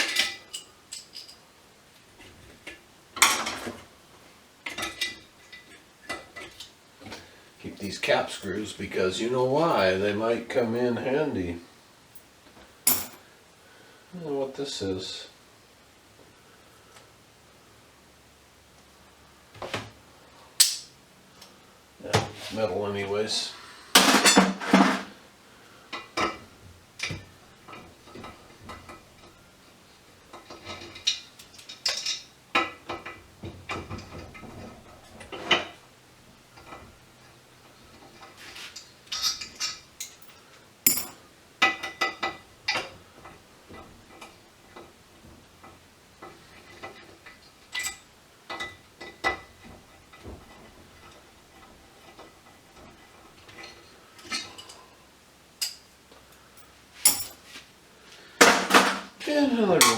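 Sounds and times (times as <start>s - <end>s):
metal parts and screws clinking: 0.0s - 1.4s, 12.2s - 13.2s, 20.6s - 20.9s, 30.4s - 32.3s, 38.1s - 41.2s, 56.6s - 57.6s.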